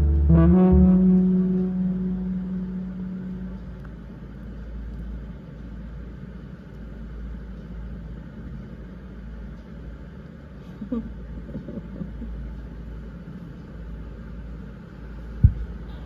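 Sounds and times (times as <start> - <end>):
short rising pitched sound: 0.0 - 3.8
low background rumble: 0.0 - 16.0.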